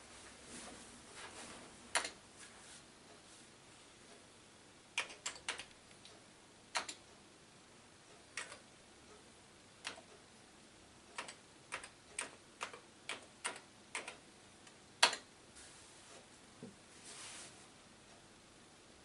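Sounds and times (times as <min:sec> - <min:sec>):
soft rustle: 0:00.0 - 0:04.2, 0:15.5 - 0:18.2
keyboard keys clicking: 0:05.0 - 0:05.8, 0:06.7 - 0:07.0, 0:11.2 - 0:14.2.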